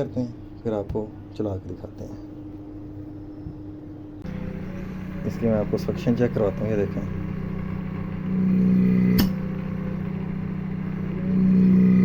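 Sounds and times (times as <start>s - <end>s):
water pump motor hum: 4.2s - 12.0s
sharp click: 9.1s - 9.4s.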